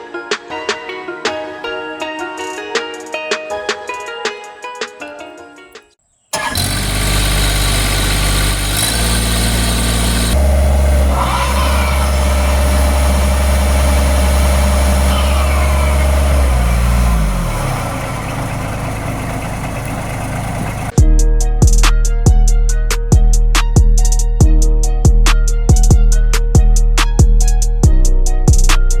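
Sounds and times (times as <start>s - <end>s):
skid steer engine running: 6.4s - 21.0s
steady whine: 6.4s - 21.0s.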